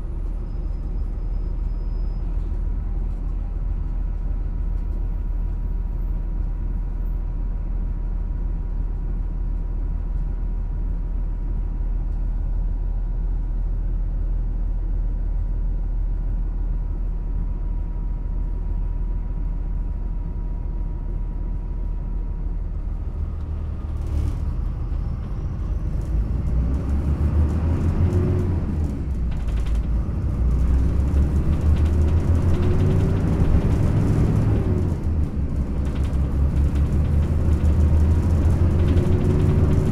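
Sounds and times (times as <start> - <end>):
bus diesel engine: 0.0 - 39.9
bus body rattling: 20.7 - 39.9.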